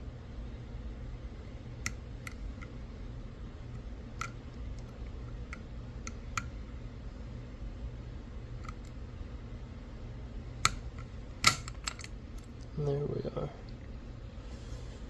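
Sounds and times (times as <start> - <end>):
steady low hum: 0.0 - 15.0
lock picks clicking in padlock: 11.4 - 12.1.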